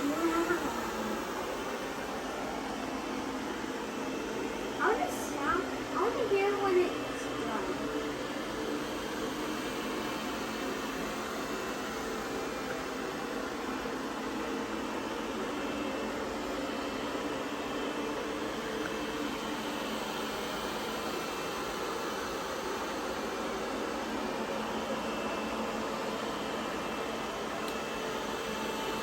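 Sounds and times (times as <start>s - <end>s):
robot vacuum whirring: 0.0s - 14.7s.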